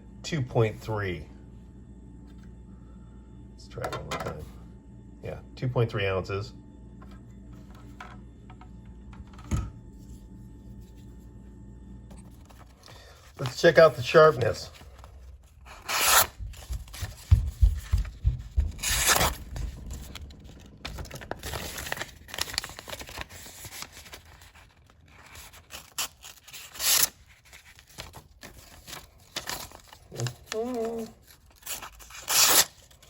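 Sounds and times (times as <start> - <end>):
knife slicing through paper: 15.7 - 16.4, 21.8 - 29.6, 31.4 - 33.0.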